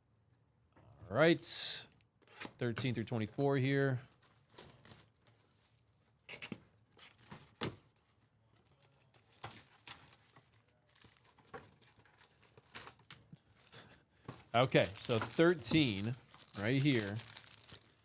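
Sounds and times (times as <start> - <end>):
foil packs crinkling: 8.8 - 18.0
sharp foil crackle: 9.2 - 13.8, 14.5 - 18.0.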